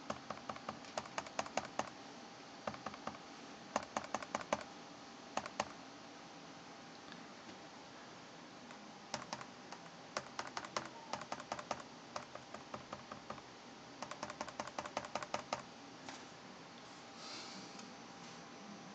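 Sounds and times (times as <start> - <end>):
laptop touchpad clacking: 0.0 - 1.9, 2.7 - 3.2, 3.8 - 4.7, 5.4 - 5.7, 9.1 - 13.4, 14.0 - 15.6.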